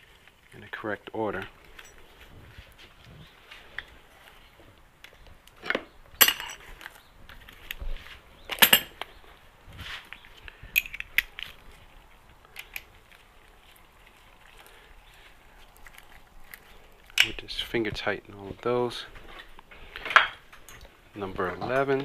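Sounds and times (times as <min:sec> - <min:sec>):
metal bolts clinking: 0:01.6 - 0:02.0, 0:05.6 - 0:06.9, 0:08.5 - 0:09.0, 0:10.8 - 0:11.4.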